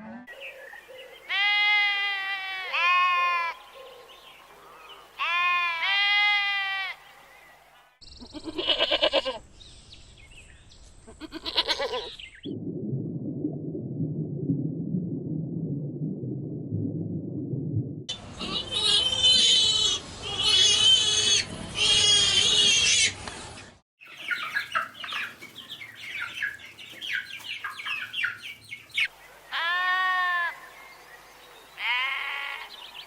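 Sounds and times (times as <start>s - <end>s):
goat bleating: 1.3s - 3.6s, 5.2s - 7.0s, 8.3s - 9.4s, 11.2s - 12.1s, 29.5s - 30.5s
steady low rumbling: 12.5s - 18.1s
rapid pulsed animal calls: 24.0s - 29.1s.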